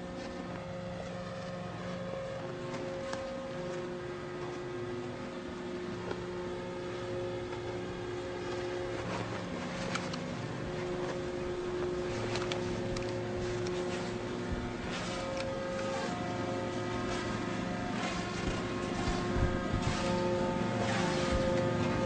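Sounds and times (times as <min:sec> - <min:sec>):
motor droning: 0:00.0 - 0:22.0.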